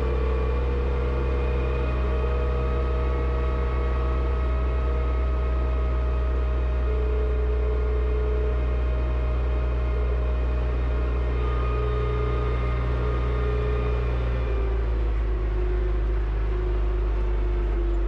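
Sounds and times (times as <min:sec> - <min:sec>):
tractor engine running steadily: 0:00.0 - 0:18.0.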